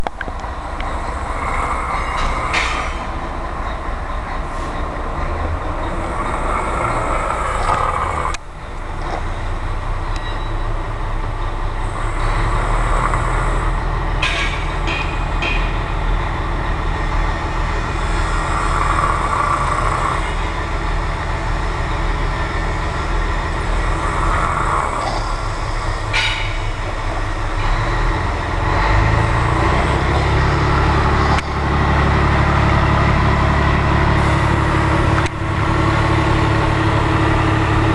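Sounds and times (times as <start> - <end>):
low steady rumble: 0.0 - 37.9
man snoring: 1.1 - 2.6, 6.0 - 8.4, 11.8 - 13.8, 17.9 - 20.5, 23.6 - 25.9.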